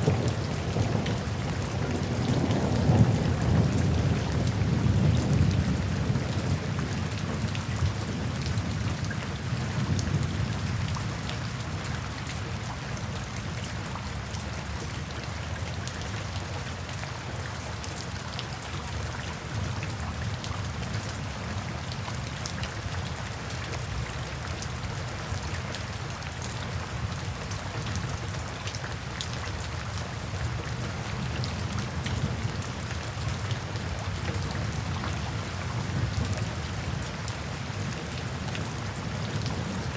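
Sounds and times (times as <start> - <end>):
light thunder rumble: 0.0 - 10.8
steady rain drops: 0.0 - 39.9.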